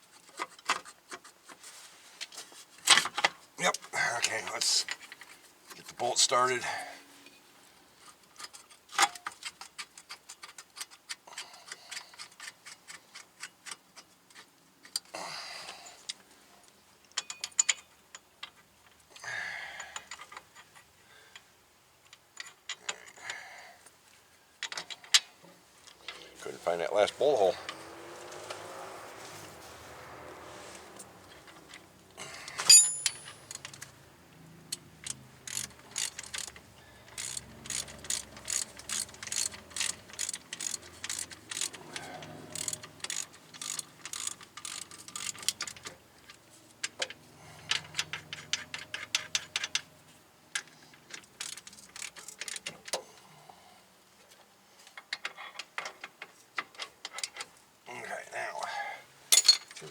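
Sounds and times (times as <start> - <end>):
metal clank: 32.5 - 33.8, 59.3 - 59.8
ratchet wrench clicking: 32.5 - 33.9, 34.7 - 45.9, 51.4 - 52.6.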